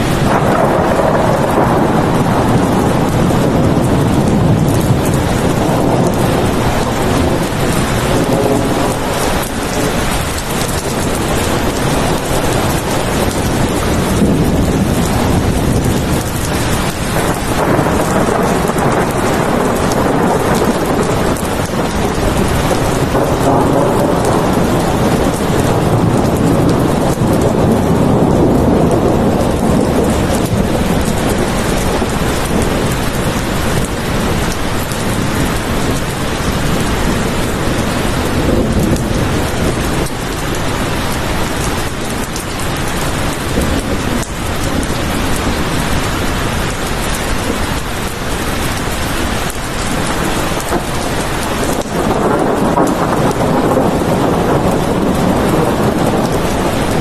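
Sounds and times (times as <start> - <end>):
heavy rain: 0.0 - 57.0
rolling thunder: 0.0 - 57.0.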